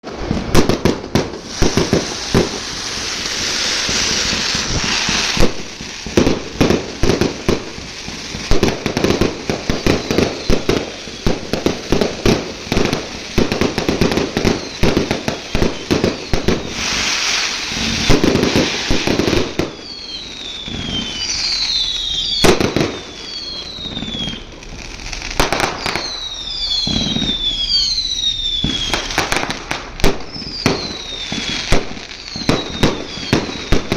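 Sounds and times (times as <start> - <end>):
fireworks bangs and crackles: 0.0 - 33.9
fireworks hissing: 0.0 - 33.9
falling whistles: 9.7 - 12.1, 14.2 - 24.5, 25.6 - 29.2, 30.2 - 33.8.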